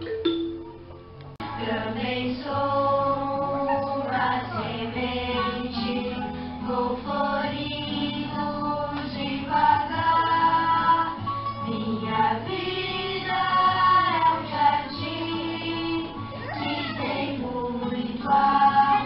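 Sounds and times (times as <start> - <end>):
instrumental accompaniment: 0.0 - 6.2
people singing together: 1.4 - 19.0.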